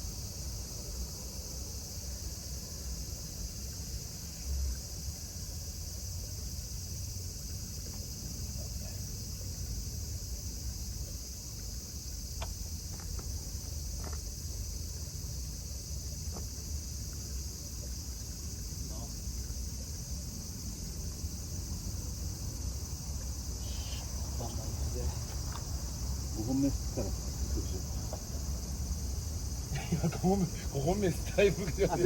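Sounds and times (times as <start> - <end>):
high-pitched insect drone: 23.4 - 32.0.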